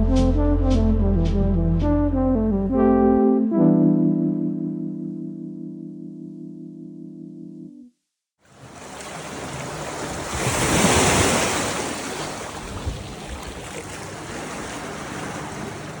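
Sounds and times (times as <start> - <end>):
ocean wave breaking: 8.5 - 16.0
steady rush of surf: 8.6 - 12.6.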